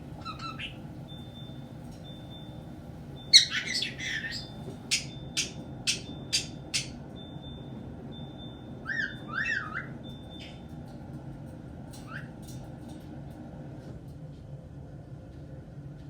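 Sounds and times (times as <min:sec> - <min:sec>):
parrot squawks: 0:00.2 - 0:00.8, 0:03.3 - 0:07.0, 0:08.8 - 0:09.9
parrot whistled chirps: 0:00.2 - 0:01.5, 0:03.2 - 0:07.0, 0:08.8 - 0:09.9.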